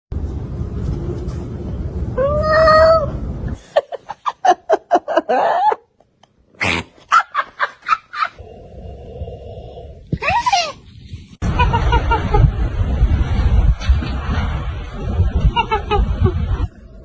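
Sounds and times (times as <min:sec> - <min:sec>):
low rumble: 0:00.1 - 0:03.6, 0:08.4 - 0:17.0.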